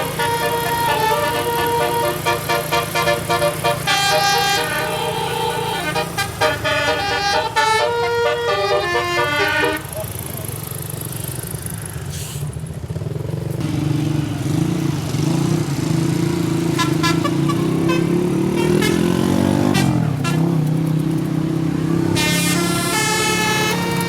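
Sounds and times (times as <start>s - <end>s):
bus horn playing a melody: 0.0s - 10.2s, 16.6s - 20.8s, 21.9s - 24.0s
heavy vehicle engine drone: 0.0s - 24.0s
road noise: 0.0s - 24.0s.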